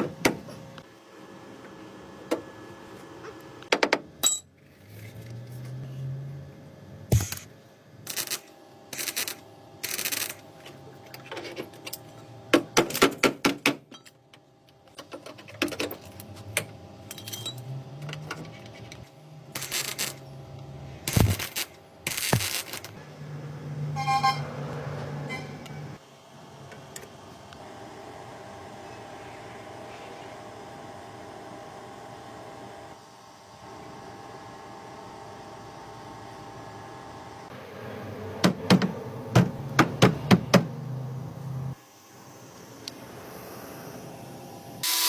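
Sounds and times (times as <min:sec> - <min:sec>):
metal tools clinking: 0:17.1 - 0:17.6
small power tool whirring: 0:44.8 - 0:45.0.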